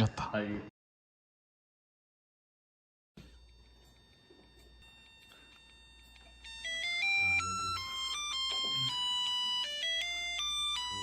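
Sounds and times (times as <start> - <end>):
electronic alarm beep tune: 3.2 - 11.0.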